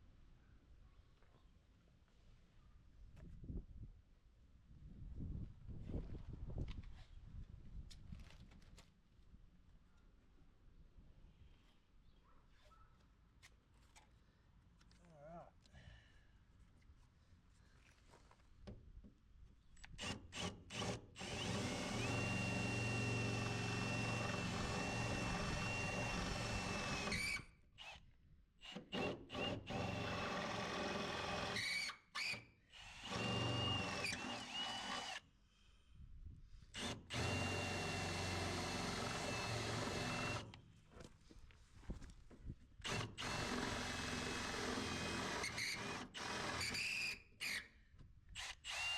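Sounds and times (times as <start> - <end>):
power drill whining: 20.0 - 28.0, 28.6 - 35.2, 36.8 - 40.6, 42.8 - 47.7, 48.4 - 48.9.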